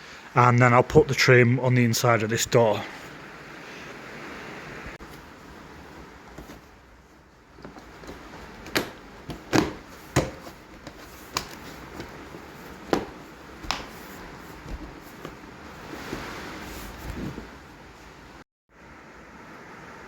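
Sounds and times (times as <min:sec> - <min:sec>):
clicks and knocks on car trim: 0:07.7 - 0:12.2, 0:12.8 - 0:14.0.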